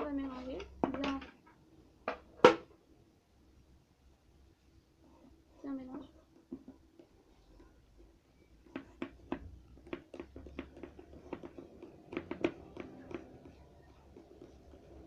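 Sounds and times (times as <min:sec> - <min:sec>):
slime being stirred in container: 0:05.7 - 0:15.0.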